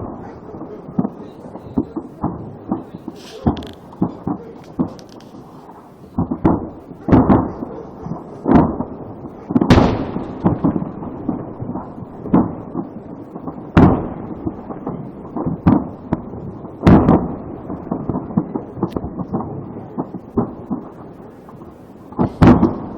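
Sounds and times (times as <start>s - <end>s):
heavy blasts: 0.0s - 22.9s
ammunition explosions and pops: 3.2s - 5.6s, 9.6s - 11.5s.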